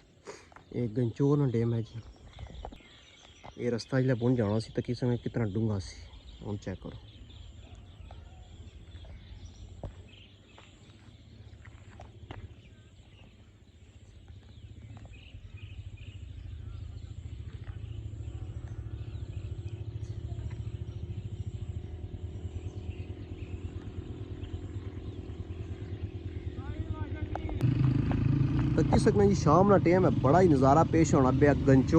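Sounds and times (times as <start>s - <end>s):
faint chirps: 0.0s - 27.6s
vehicle engine hum: 6.6s - 31.9s.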